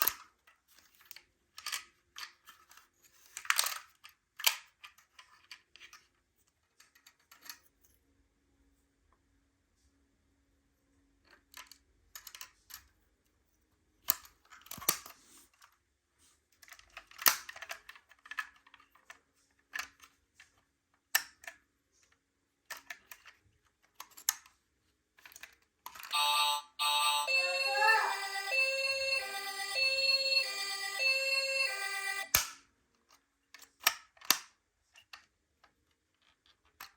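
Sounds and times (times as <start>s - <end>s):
toy car parts clicking and rattling: 0.0s - 7.9s, 11.3s - 13.0s, 14.0s - 15.8s, 16.5s - 26.1s, 32.3s - 36.9s
electronic siren-like tone with music: 26.2s - 32.4s.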